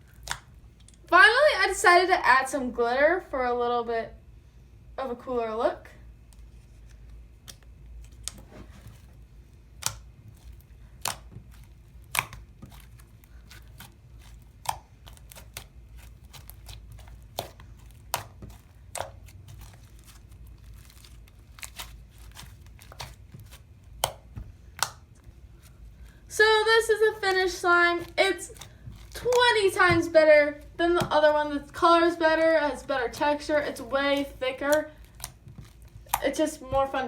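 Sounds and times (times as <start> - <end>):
slime popping and crackling: 9.7 - 25.3, 27.0 - 31.7, 33.0 - 37.0.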